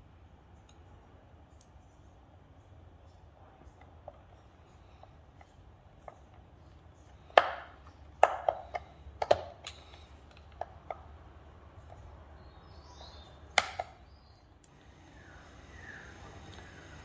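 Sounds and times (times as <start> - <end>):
small parts and tools tapping: 3.0 - 12.3.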